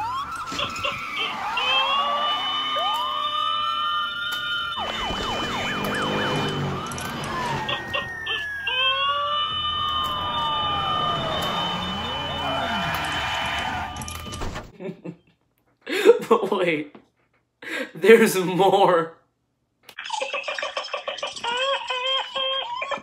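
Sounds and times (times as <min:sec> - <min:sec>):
siren-like wailing: 0:00.0 - 0:14.5.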